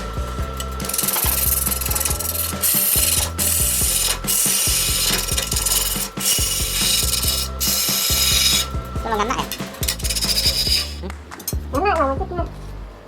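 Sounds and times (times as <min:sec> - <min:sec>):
lathe tool scraping wood: 0:00.1 - 0:11.0.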